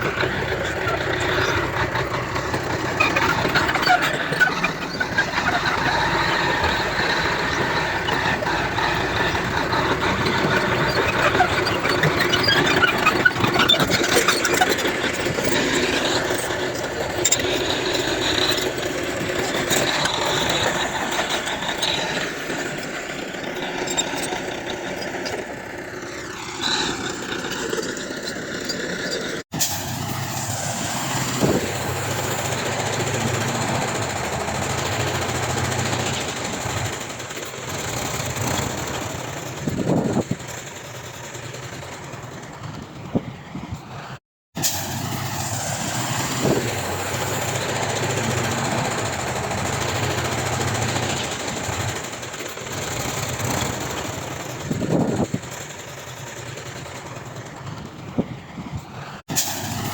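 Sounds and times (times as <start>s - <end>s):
diesel engines running: 0.0s - 59.9s.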